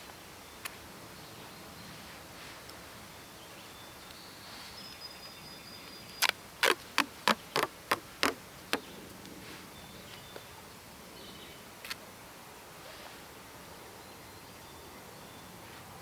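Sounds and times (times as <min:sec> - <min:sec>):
duct tape ripping: 0:06.2 - 0:08.8.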